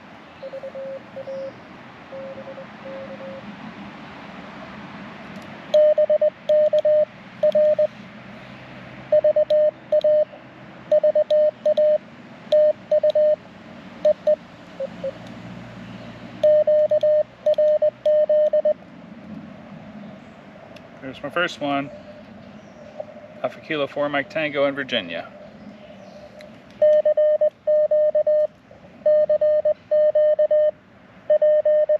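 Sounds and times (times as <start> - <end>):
morse code beeps: 0.4 - 1.5, 2.1 - 3.4, 5.7 - 7.9, 9.1 - 13.4, 14.0 - 15.2, 16.4 - 18.8, 26.8 - 31.9
faint lower morse signals: 0.4 - 3.4, 5.7 - 7.9, 9.1 - 13.4, 16.4 - 18.8, 26.8 - 31.9.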